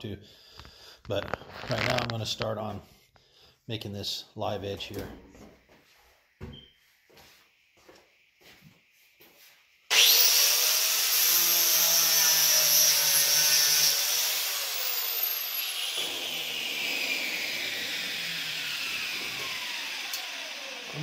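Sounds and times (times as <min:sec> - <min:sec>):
angle grinder grinding wood: 0:09.9 - 0:21.0.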